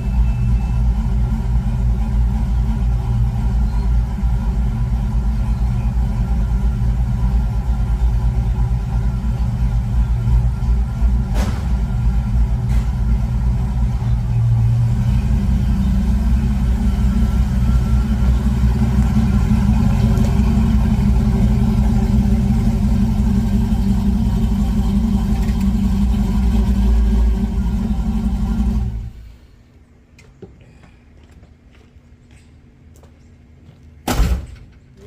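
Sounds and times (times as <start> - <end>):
car engine low rumble: 0.0 - 30.6.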